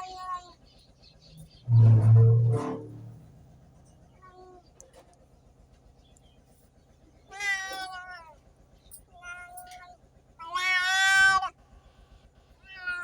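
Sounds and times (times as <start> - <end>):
cat meowing: 9.2 - 11.5, 12.6 - 13.0.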